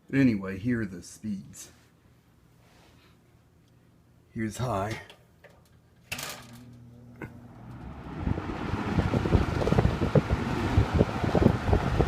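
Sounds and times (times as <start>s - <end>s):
fan motor hum and air rush: 6.4s - 12.0s
air buffeting microphone: 7.3s - 12.0s.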